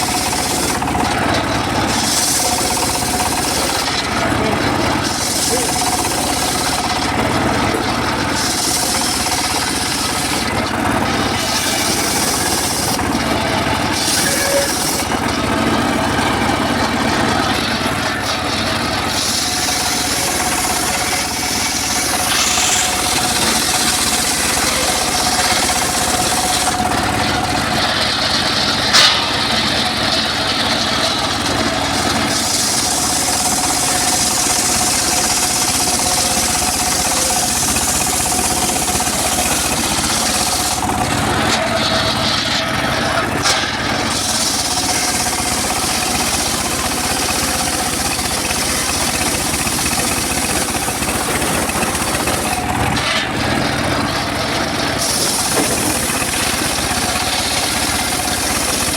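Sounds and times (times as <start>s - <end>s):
saw blade hissing through wood: 0.0s - 0.9s, 1.9s - 4.2s, 4.9s - 7.1s, 8.2s - 10.5s, 11.2s - 13.1s, 13.9s - 15.2s, 17.2s - 27.0s, 32.2s - 40.9s, 44.0s - 53.1s, 55.0s - 58.9s
circular saw motor whine: 0.0s - 58.9s.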